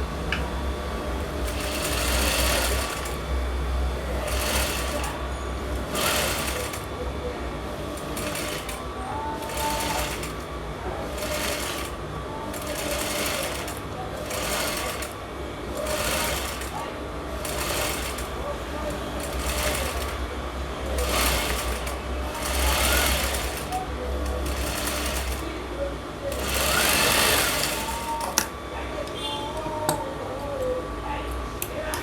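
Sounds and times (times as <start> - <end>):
sewing machine stitching: 1.3 - 3.3, 4.1 - 7.0, 7.8 - 20.3, 20.9 - 25.6, 26.2 - 28.5.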